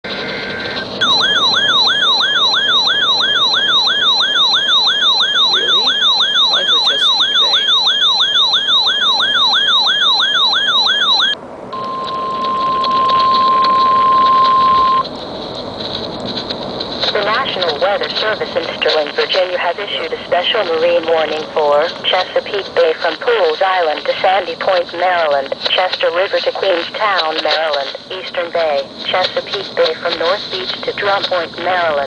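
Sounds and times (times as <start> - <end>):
warbling siren alarm: 0.1 - 15.1
steady alarm tone: 0.1 - 15.6.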